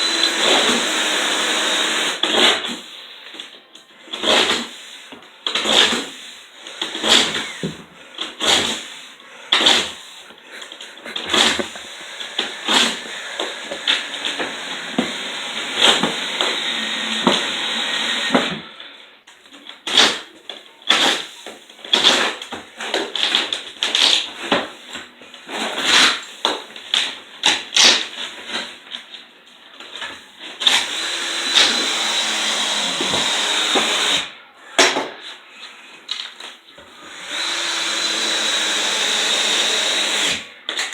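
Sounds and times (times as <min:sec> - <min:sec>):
electric power tool motor: 0:00.0 - 0:02.3, 0:06.8 - 0:07.8, 0:11.1 - 0:18.6, 0:30.6 - 0:34.3, 0:36.9 - 0:40.5.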